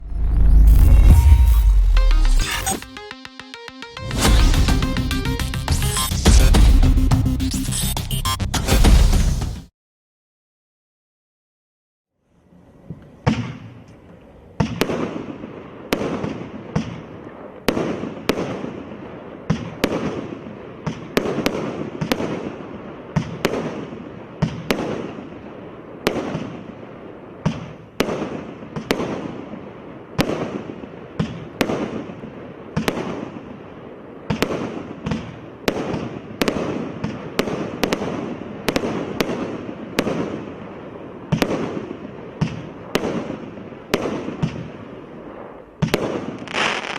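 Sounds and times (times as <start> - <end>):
firework shots and bursts: 4.0 - 7.7, 14.6 - 46.9.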